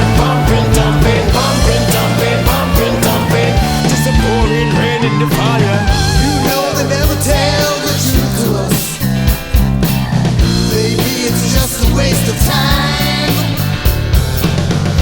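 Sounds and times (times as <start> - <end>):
wavering lead melody: 0.0 - 8.8
rock music: 0.0 - 15.0.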